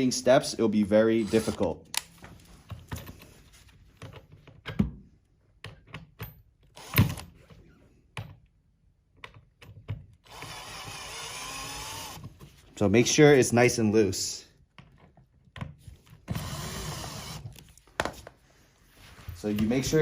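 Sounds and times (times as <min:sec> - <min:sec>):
power drill driving screw: 0:01.2 - 0:02.0, 0:06.7 - 0:07.4, 0:10.2 - 0:12.3, 0:16.2 - 0:17.6.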